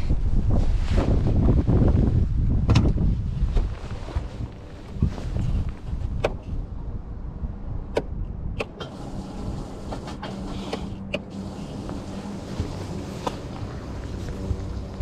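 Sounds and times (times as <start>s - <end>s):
wind rumbling on microphone: 0.0s - 15.0s
electric boat motor humming: 8.7s - 15.0s.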